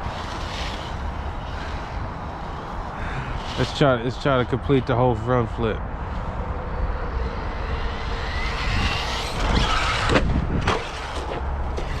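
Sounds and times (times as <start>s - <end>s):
electric motor whining: 6.1s - 12.0s
toy truck hitting ground: 8.6s - 12.0s.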